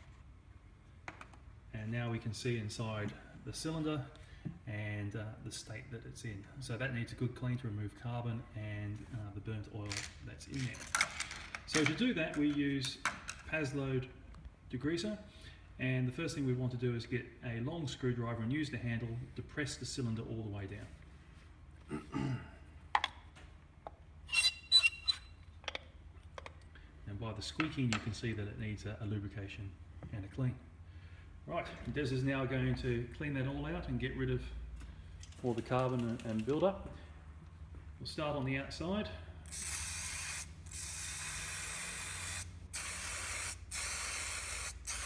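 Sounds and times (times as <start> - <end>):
stapler cylinder squeaking: 24.3 - 25.4
spray can hissing: 39.5 - 45.0.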